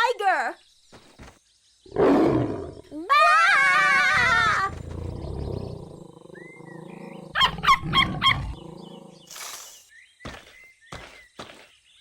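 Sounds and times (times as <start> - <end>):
cartoon tiger growl: 3.7 - 9.4.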